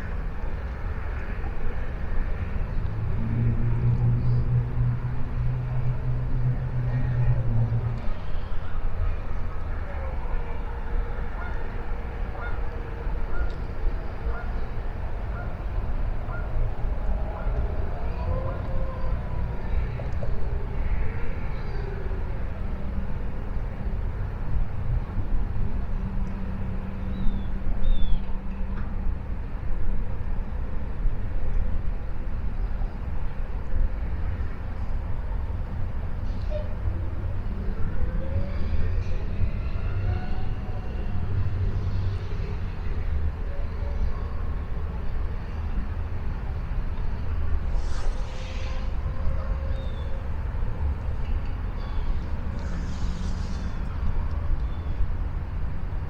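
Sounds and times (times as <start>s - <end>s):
steady low rumble: 0.0s - 27.1s, 40.6s - 56.0s
brief hiss: 47.6s - 49.2s, 52.5s - 54.3s.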